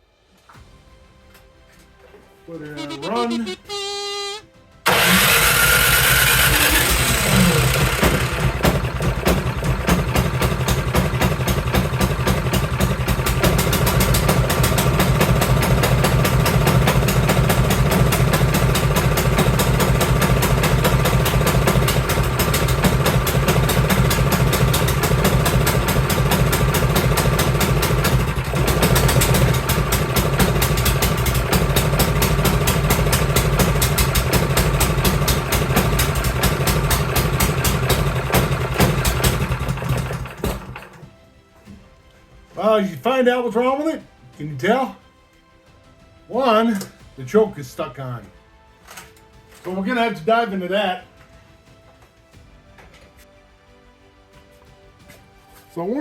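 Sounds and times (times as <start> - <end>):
electric starter cranking: 2.8 - 41.2
snowblower engine running: 2.8 - 41.2.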